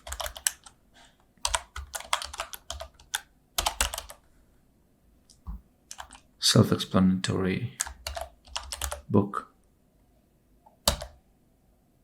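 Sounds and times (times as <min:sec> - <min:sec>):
keyboard typing: 0:00.0 - 0:00.8, 0:01.4 - 0:04.2, 0:05.5 - 0:06.3, 0:07.8 - 0:09.1, 0:10.8 - 0:11.2.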